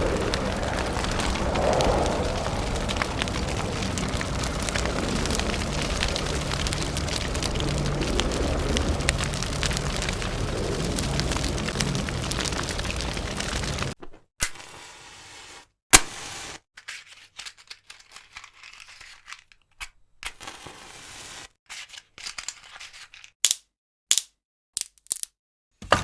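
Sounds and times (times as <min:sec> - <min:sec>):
fire crackling and popping: 0:00.0 - 0:14.8.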